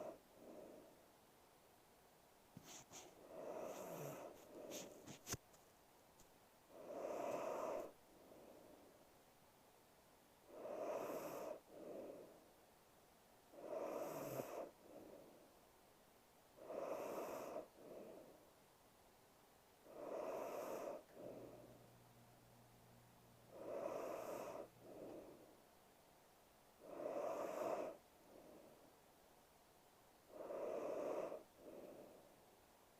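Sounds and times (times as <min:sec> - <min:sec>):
woman breathing heavily: 0:02.6 - 0:05.2, 0:24.2 - 0:25.6.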